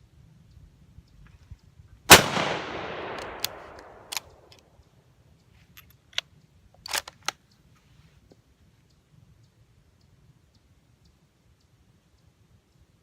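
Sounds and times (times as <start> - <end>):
rifle shot with echo: 2.1 - 4.5.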